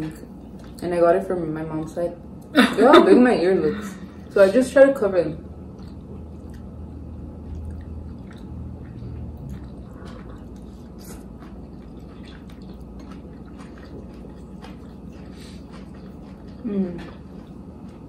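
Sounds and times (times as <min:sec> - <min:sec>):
low hum: 0:00.0 - 0:18.0
chewing: 0:00.1 - 0:00.9, 0:05.6 - 0:18.0.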